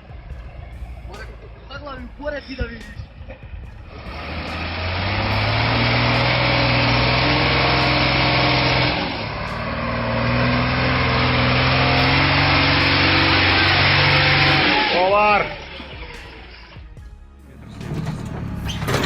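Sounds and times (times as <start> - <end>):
heavy vehicle engine running hard: 3.6 - 16.8.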